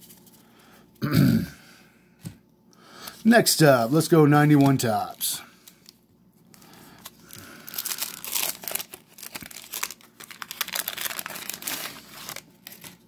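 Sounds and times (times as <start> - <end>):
wrapper crinkling: 4.4 - 13.0.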